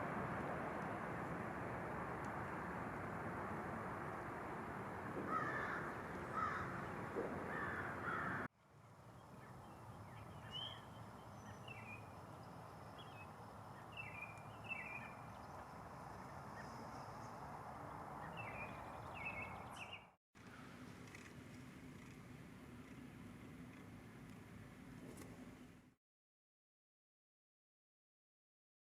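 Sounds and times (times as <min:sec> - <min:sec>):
outdoor background noise: 0:00.0 - 0:26.0
crows cawing: 0:05.2 - 0:08.5
small birds chirping: 0:09.2 - 0:20.1.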